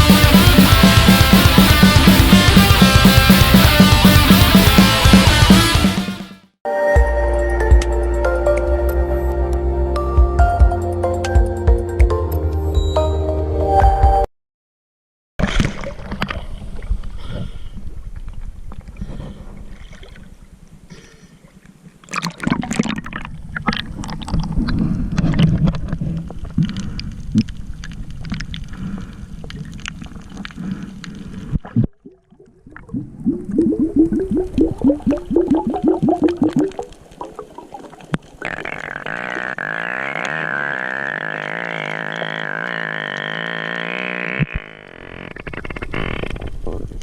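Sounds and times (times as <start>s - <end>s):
underwater gurgling and bubbling: 22.1s - 43.8s, 44.4s - 47.0s
rising bubbly pulses: 31.7s - 46.6s
crackling: 35.2s - 47.0s.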